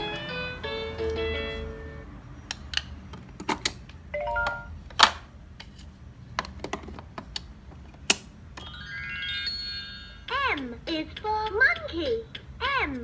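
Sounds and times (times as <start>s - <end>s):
toy electronic beep: 4.2s - 4.7s.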